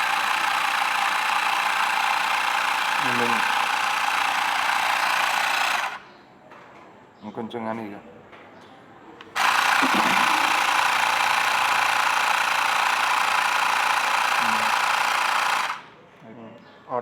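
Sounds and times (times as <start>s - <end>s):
air compressor running: 0.0s - 6.1s, 9.3s - 16.0s.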